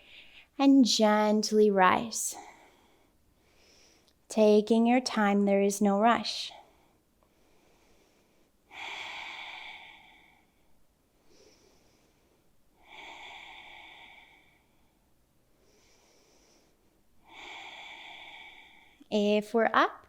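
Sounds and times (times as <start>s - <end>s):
woman breathing slowly: 0.0s - 0.6s, 2.4s - 4.3s, 6.6s - 19.1s.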